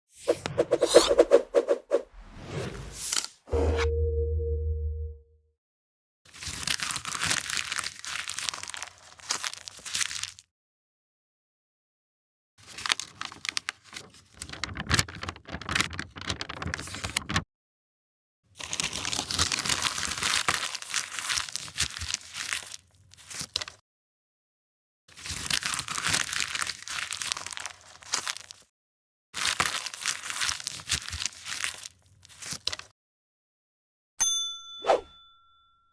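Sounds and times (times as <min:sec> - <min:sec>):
paper being crumpled: 0:06.4 - 0:10.4, 0:12.7 - 0:17.4, 0:18.6 - 0:23.8, 0:25.2 - 0:28.7, 0:29.4 - 0:32.9.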